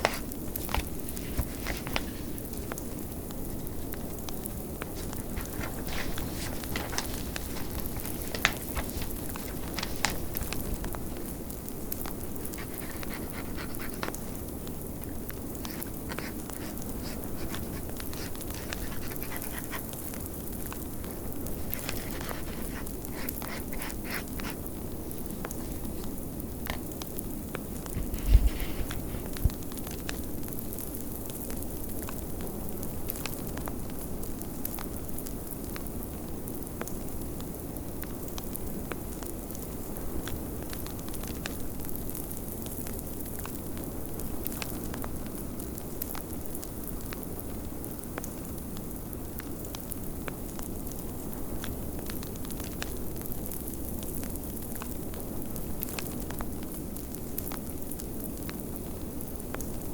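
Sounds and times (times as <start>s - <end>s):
fireplace crackling and popping: 0.0s - 59.9s.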